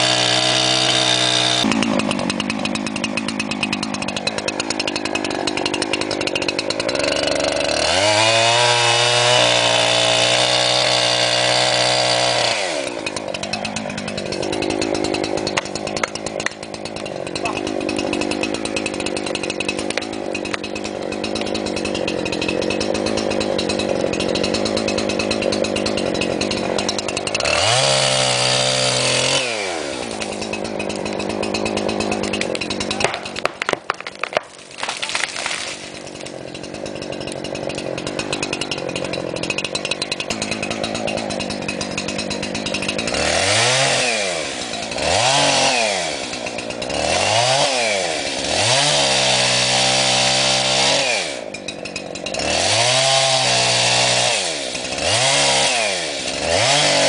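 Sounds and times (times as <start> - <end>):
chainsaw engine revving: 0.0 - 57.0.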